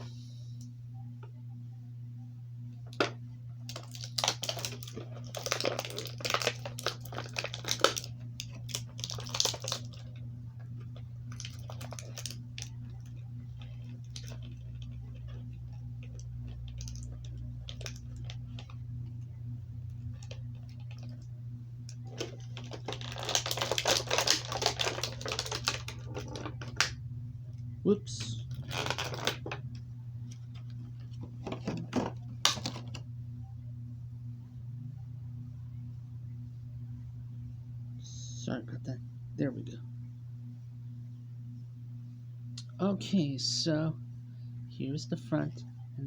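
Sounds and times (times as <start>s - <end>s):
steady low hum: 0.0s - 46.0s
plastic packaging crackling: 3.7s - 21.3s, 21.9s - 27.0s, 28.3s - 33.0s.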